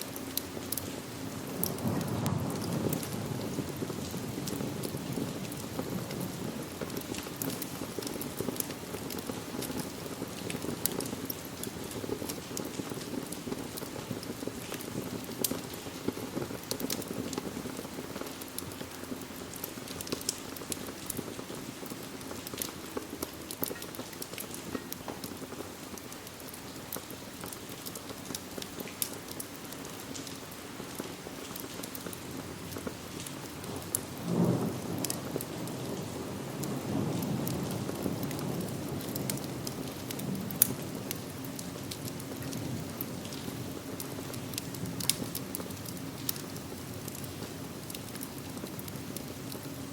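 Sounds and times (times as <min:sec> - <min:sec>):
steady rain: 0:00.0 - 0:49.9
wood fire crackling: 0:00.0 - 0:49.9.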